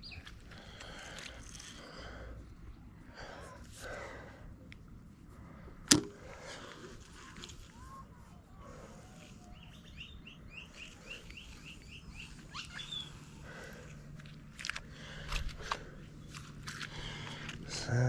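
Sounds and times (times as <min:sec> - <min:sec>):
bird chirping rapidly: 0:09.6 - 0:13.2.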